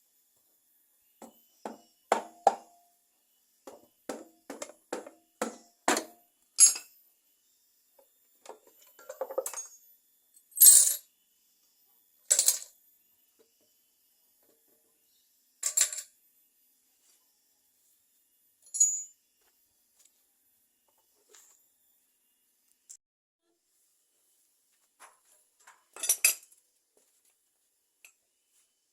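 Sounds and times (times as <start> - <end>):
metal parts clinking: 6.6 - 6.9, 18.7 - 19.1
bright ringing clinks: 18.6 - 19.2.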